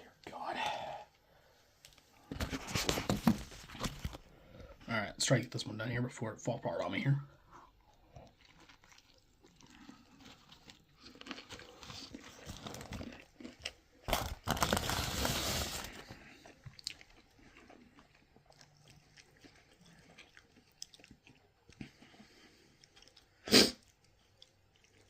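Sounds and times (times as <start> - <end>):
person crunching and chewing food: 7.3 - 25.0.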